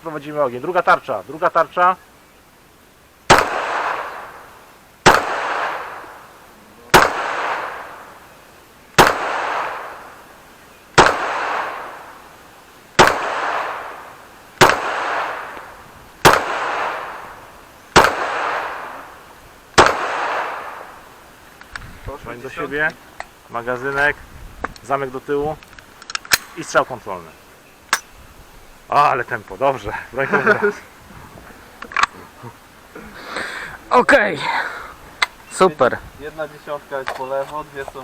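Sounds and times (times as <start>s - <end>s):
pistol shots with echo: 3.3s - 6.3s, 6.9s - 8.2s, 9.0s - 10.2s, 11.0s - 12.2s, 13.0s - 19.2s, 19.8s - 21.1s.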